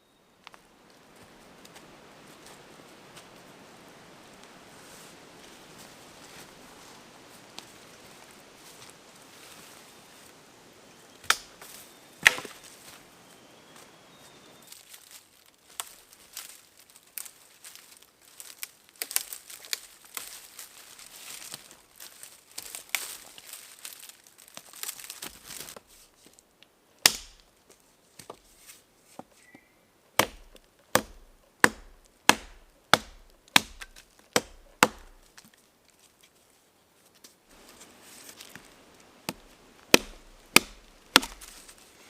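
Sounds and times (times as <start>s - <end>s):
wood being chopped by hand: 11.2s - 11.6s, 12.2s - 12.6s, 27.0s - 27.5s, 30.2s - 35.4s, 39.3s - 41.7s.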